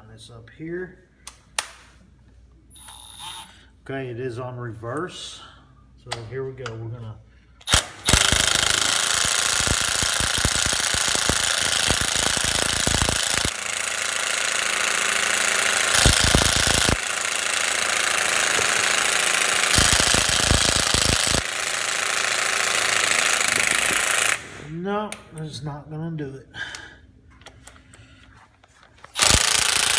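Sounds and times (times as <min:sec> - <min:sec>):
impact wrench hammering on lug nut: 0:07.7 - 0:24.5, 0:29.2 - 0:29.9.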